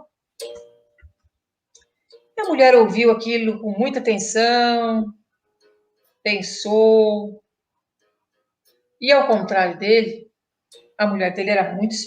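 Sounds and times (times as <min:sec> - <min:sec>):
plucked guitar-like string: 0:00.0 - 0:01.2.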